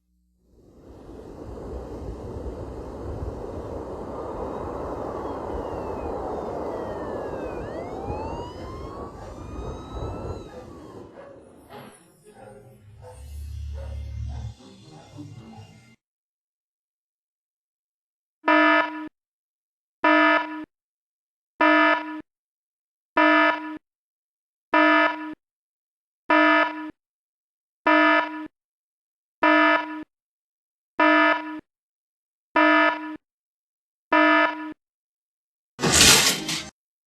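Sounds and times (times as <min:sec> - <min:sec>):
cartoon alarm buzzer blasts: 0:18.5 - 0:19.1, 0:20.0 - 0:20.7, 0:21.6 - 0:22.2, 0:23.2 - 0:23.8, 0:24.8 - 0:25.4, 0:26.3 - 0:27.0, 0:27.9 - 0:28.5, 0:29.4 - 0:30.1, 0:31.0 - 0:31.6, 0:32.6 - 0:33.2, 0:34.1 - 0:34.8.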